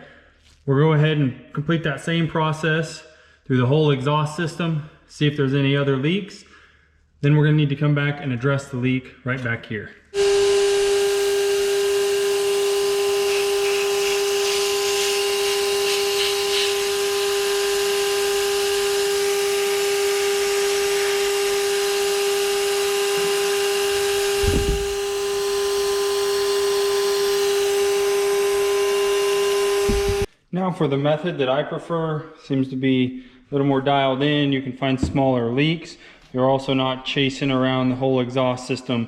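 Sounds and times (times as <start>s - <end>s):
shop vac motor whining: 10.1s - 30.3s
air hissing: 10.2s - 30.3s
low thump: 24.3s - 25.0s, 29.9s - 30.3s.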